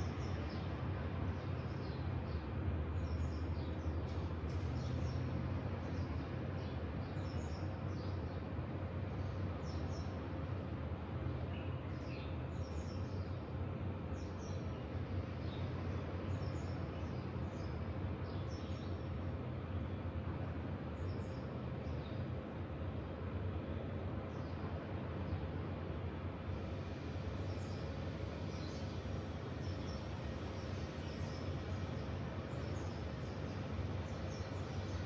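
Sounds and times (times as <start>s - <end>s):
small birds chirping: 0.0s - 8.5s, 11.3s - 20.0s, 20.9s - 22.4s, 26.7s - 35.0s.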